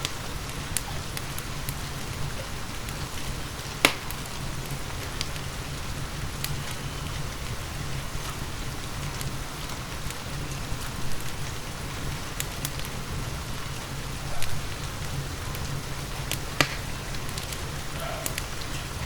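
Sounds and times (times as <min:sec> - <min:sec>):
steady rain: 0:00.0 - 0:19.0
wood fire crackling and popping: 0:00.0 - 0:19.0.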